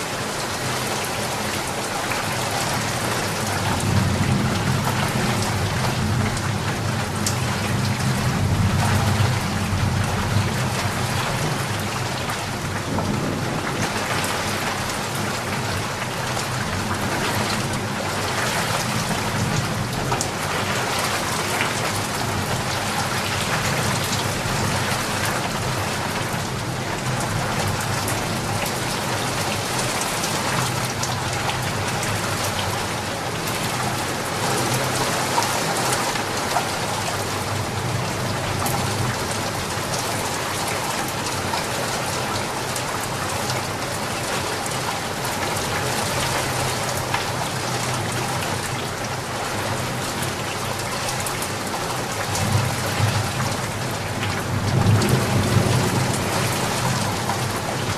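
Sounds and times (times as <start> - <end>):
heavy rain falling: 0.0 - 57.9
low rumble of thunder: 2.7 - 32.9, 52.2 - 57.9.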